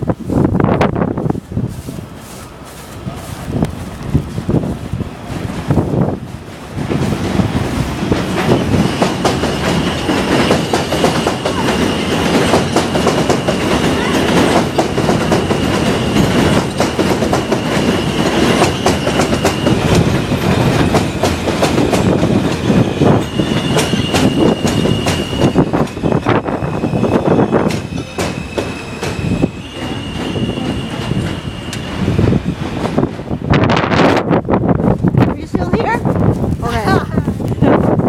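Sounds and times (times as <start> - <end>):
train wheels clattering over rail joints: 3.6 - 33.6
high wheel squeal: 8.5 - 32.8.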